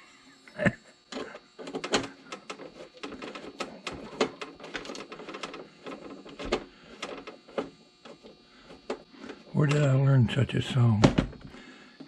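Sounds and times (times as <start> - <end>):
tools and plastic parts rattling: 1.1 - 9.9.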